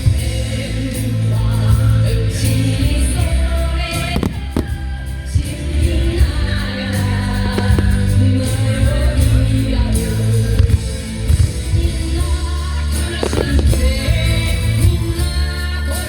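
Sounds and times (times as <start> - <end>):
song with singing and backing: 0.0 - 16.0
firework bangs: 4.0 - 5.1, 7.6 - 8.8, 13.1 - 14.8.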